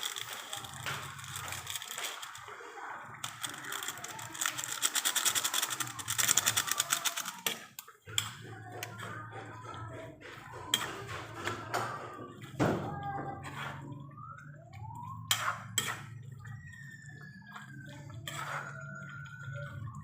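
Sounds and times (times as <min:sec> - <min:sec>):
rapid sharp clicks: 0:03.2 - 0:08.3.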